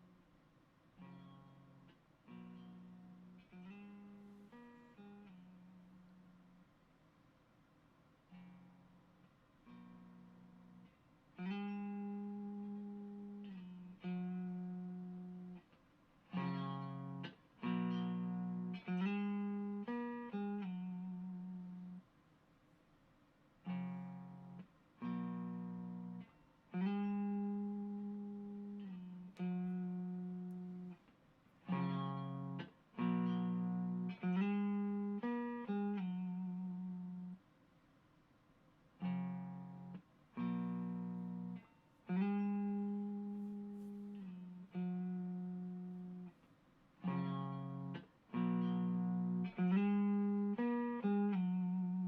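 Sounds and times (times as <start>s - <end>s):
overdriven electric guitar chords: 9.6s - 15.7s, 16.3s - 22.0s, 23.6s - 31.0s, 31.6s - 37.4s, 39.0s - 46.4s, 47.0s - 52.0s.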